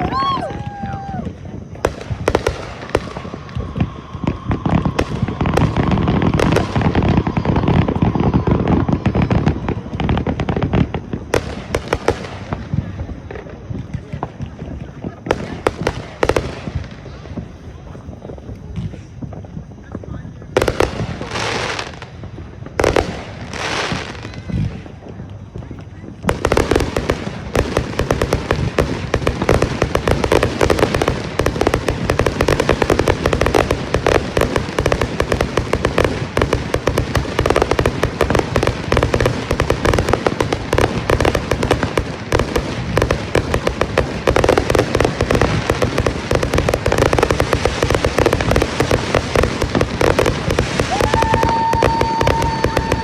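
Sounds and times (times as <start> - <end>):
fireworks bangs and crackle: 0.0 - 53.0
steady whistle: 3.1 - 10.0, 50.9 - 53.0.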